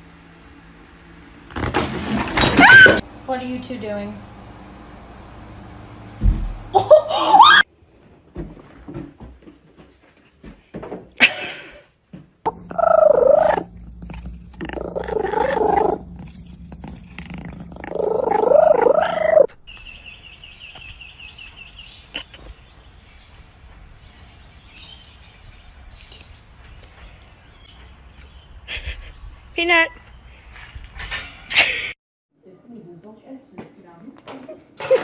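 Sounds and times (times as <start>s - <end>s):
cat yowling: 2.4s - 3.0s, 7.1s - 7.6s, 12.5s - 19.5s.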